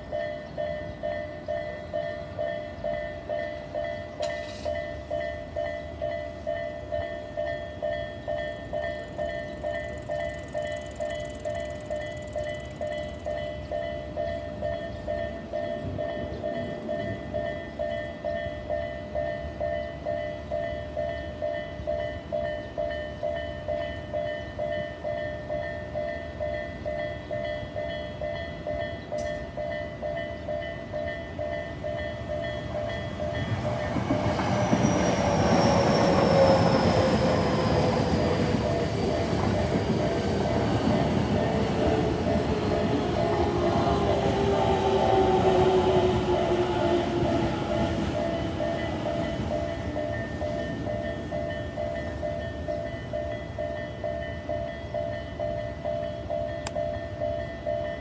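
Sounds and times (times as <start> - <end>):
railroad crossing bell ringing: 0.0 - 58.0
train passing rumble: 0.0 - 58.0.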